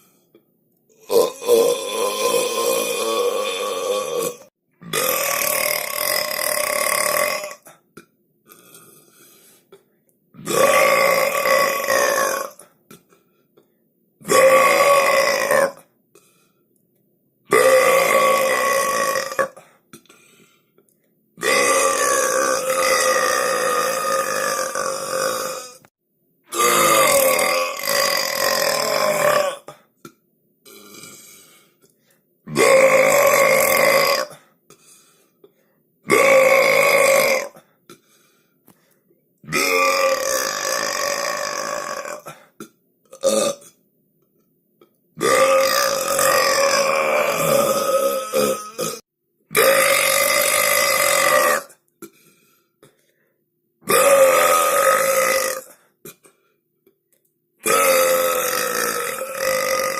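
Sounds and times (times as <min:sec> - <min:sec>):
long human burps: 0:01.0 - 0:09.1, 0:10.4 - 0:13.3, 0:17.5 - 0:20.1, 0:21.4 - 0:25.9, 0:32.5 - 0:34.6, 0:36.1 - 0:38.0, 0:39.4 - 0:43.8, 0:44.8 - 0:53.0, 0:53.8 - 0:56.5, 0:57.6 - 0:59.9.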